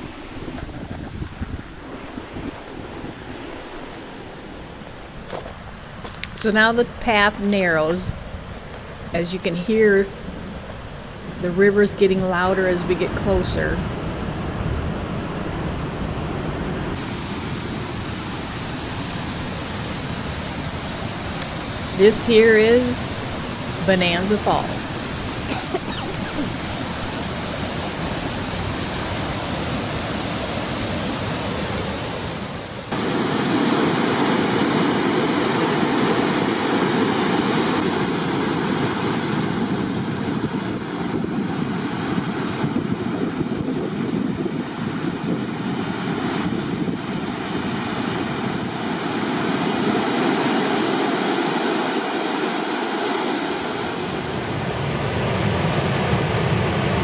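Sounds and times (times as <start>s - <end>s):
waterfall rushing: 17.0s - 39.6s.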